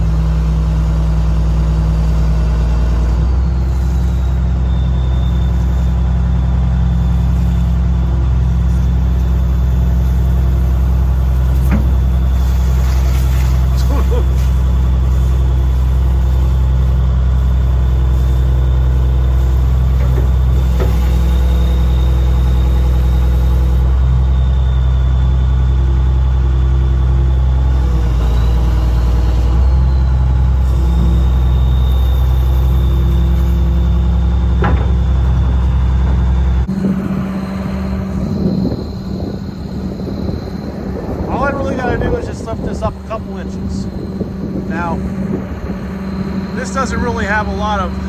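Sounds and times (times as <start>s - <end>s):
diesel engine drone: 0.0s - 48.0s
thin high whine: 36.6s - 48.0s.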